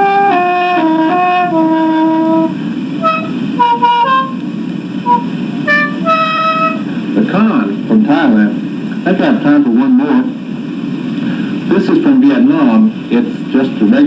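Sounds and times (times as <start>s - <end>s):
mouth organ playing tune: 0.0s - 9.4s.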